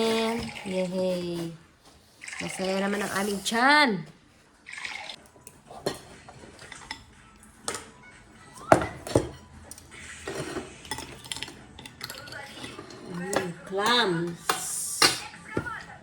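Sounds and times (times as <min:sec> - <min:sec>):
plates and cutlery clinking: 0:05.1 - 0:15.8.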